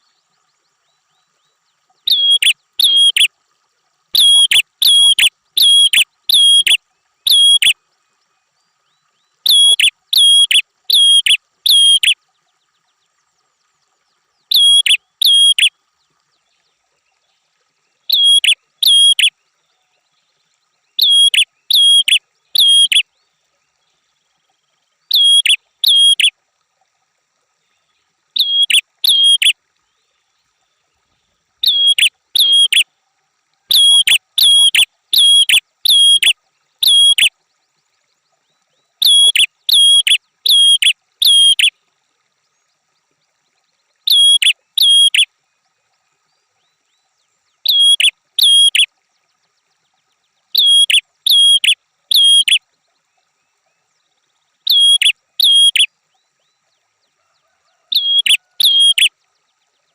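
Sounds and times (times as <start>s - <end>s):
prinia chip notes: 2.1s - 3.3s, 4.2s - 7.8s, 18.1s - 19.3s, 31.6s - 32.8s, 33.7s - 37.3s.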